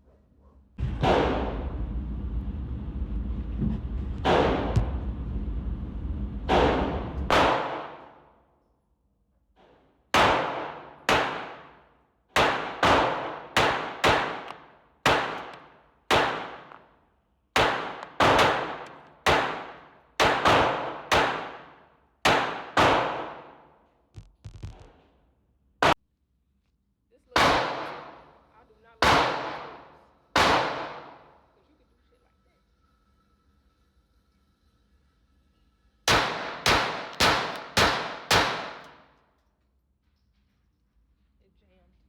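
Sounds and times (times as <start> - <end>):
gunshots echoing: 0.8 - 1.9, 4.2 - 5.2, 6.4 - 8.3, 10.1 - 16.9, 17.6 - 23.8, 27.4 - 28.4, 29.0 - 31.4, 36.1 - 39.0.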